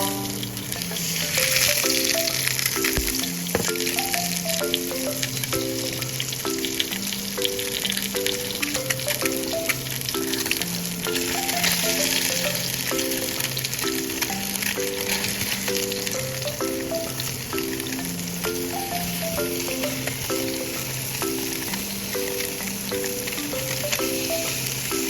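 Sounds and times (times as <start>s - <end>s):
gentle background music: 0.0s - 25.0s
tofu sizzling in a frying pan: 19.5s - 23.4s.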